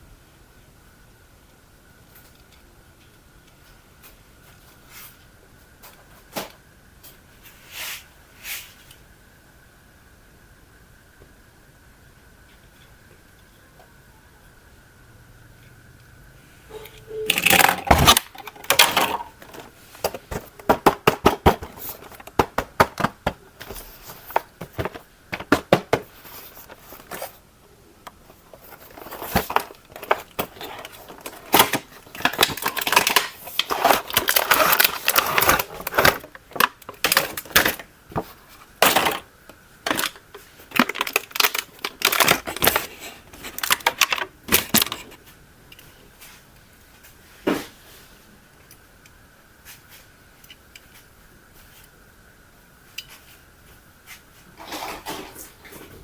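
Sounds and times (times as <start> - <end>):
plastic toy clicks and clattering: 17.3 - 26.0, 28.5 - 37.9, 39.9 - 45.1.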